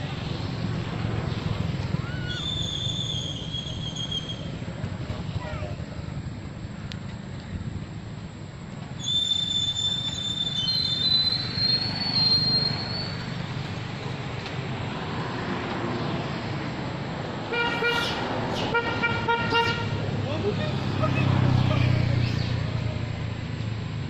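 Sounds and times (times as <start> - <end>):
high whistling tone: 2.0 - 4.7, 9.0 - 13.3
horn tooting short blasts: 17.5 - 20.0.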